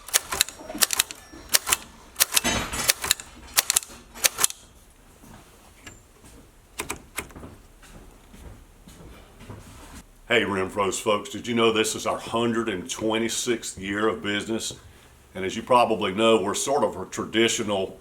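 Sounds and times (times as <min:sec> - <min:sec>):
manual typewriter typing: 0:00.0 - 0:04.6.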